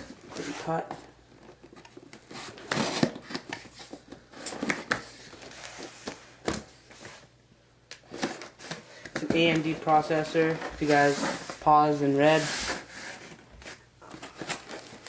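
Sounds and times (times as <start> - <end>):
cardboard box rustling and scraping: 10.4 - 15.0.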